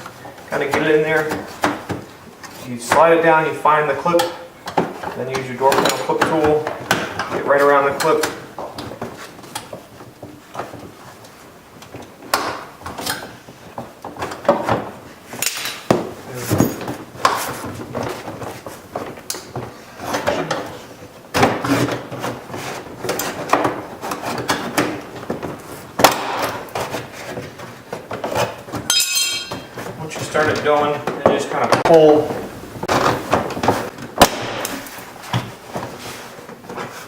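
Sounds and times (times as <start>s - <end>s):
tool scraping plastic panel: 19.9s - 28.9s, 29.7s - 34.0s.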